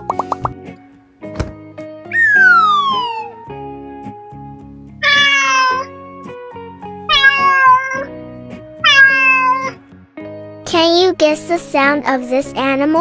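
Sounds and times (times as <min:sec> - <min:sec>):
light background music: 0:00.0 - 0:13.0
cat meowing: 0:05.0 - 0:05.9, 0:07.1 - 0:08.1, 0:08.8 - 0:09.8.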